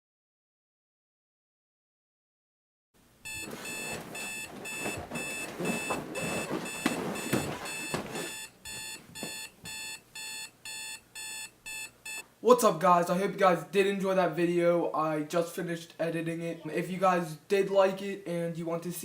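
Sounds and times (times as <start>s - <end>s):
rustling: 3.2s - 9.5s
alarm clock beeping: 3.3s - 12.2s.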